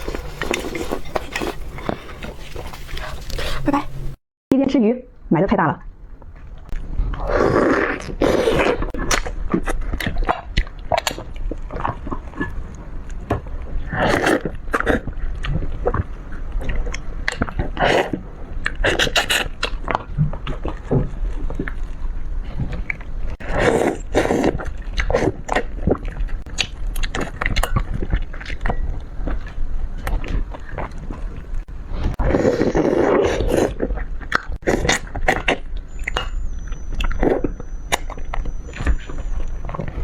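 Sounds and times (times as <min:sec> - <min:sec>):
wet biting and chewing: 0:06.7 - 0:40.0.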